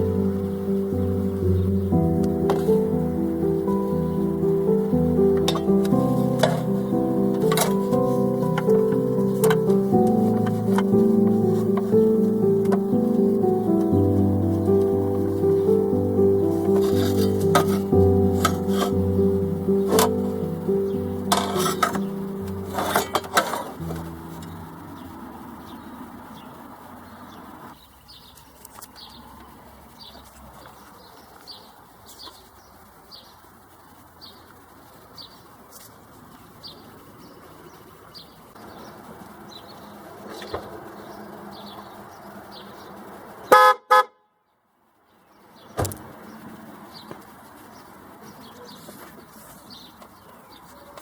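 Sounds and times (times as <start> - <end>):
high chirp: 0.0 - 22.8
car horn toots: 43.5 - 44.2.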